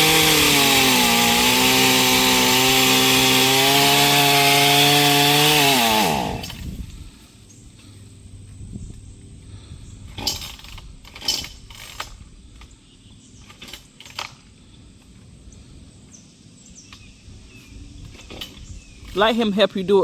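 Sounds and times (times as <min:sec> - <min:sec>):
chainsaw idling: 0:00.0 - 0:06.8.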